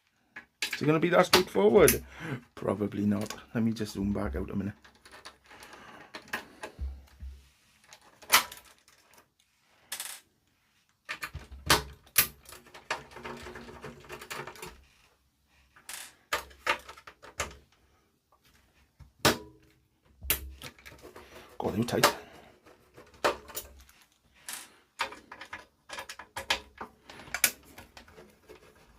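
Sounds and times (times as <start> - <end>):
metal tools clicking and knocking: 21.8 - 28.2.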